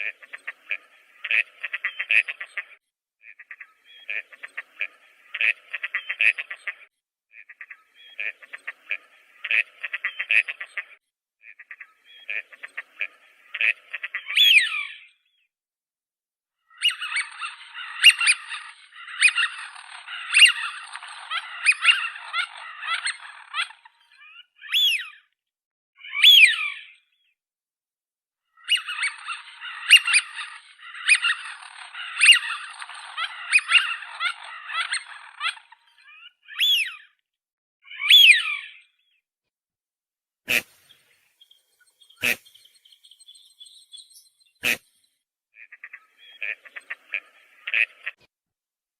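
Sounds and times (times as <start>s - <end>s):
birds chirping: 0.0s - 15.5s, 16.6s - 25.4s, 28.5s - 37.2s, 40.5s - 48.3s
downward-sweeping bird calls: 11.8s - 15.3s, 16.7s - 25.3s, 26.0s - 27.2s, 28.6s - 37.2s, 37.9s - 39.2s, 40.5s - 48.1s.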